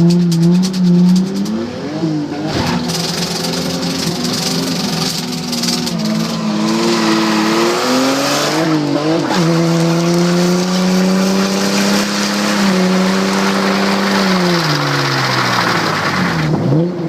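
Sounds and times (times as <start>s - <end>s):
car engine at high revs: 0.0s - 17.0s
tyres spinning in a skid: 8.6s - 16.7s.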